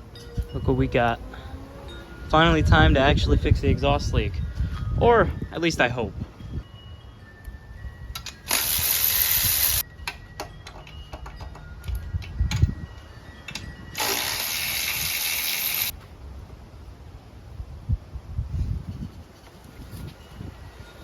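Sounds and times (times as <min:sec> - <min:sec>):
handling clicks and knocks: 0:10.0 - 0:12.7
hissing spray: 0:14.0 - 0:15.9.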